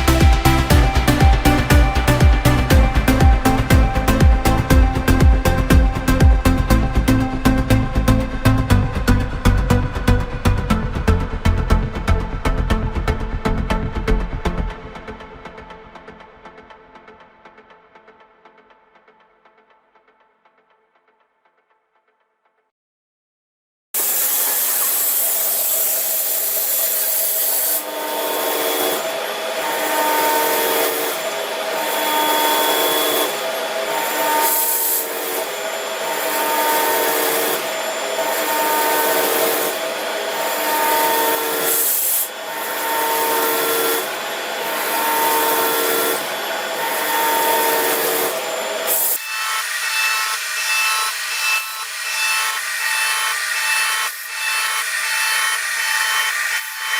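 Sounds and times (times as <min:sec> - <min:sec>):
machine grinding metal: 0:24.0 - 0:56.9
pulsing ringing tones: 0:27.9 - 0:56.9.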